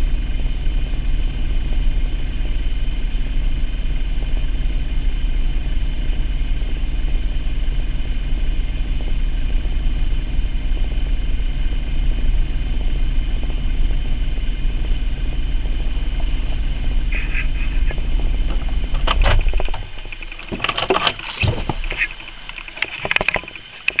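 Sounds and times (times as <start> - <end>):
car engine idling: 0.0 - 24.0
clicks and knocks: 18.4 - 24.0.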